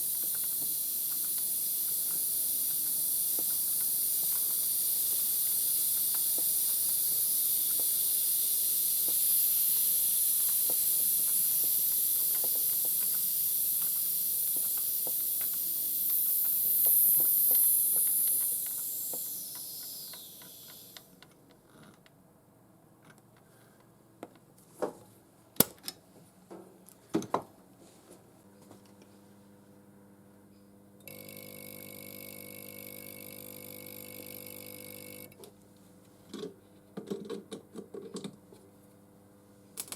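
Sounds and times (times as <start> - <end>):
high hiss of air spray: 0.0 - 21.2.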